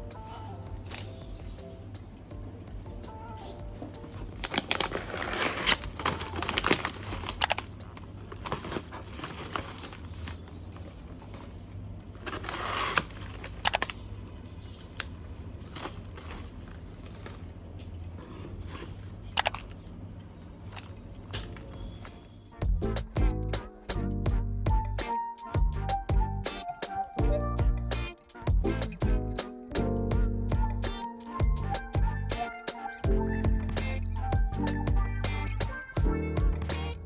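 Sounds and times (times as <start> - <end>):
objects rustling and crinkling: 3.4 - 20.0, 20.6 - 22.4.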